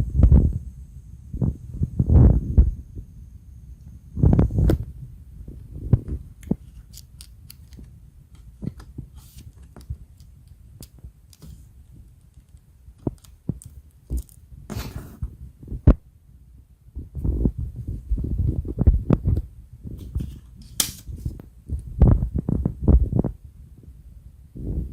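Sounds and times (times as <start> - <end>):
short scrape: 14.7 - 15.3.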